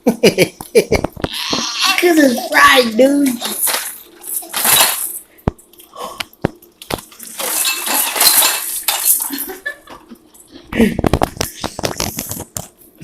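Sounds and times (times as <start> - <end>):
plates and utensils clinking: 3.3 - 5.3, 7.1 - 9.6.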